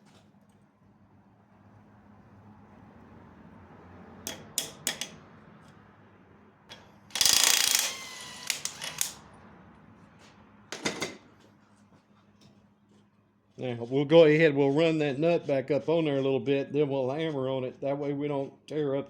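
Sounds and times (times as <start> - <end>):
ratchet wrench clicking: 4.3 - 5.2, 7.1 - 9.2.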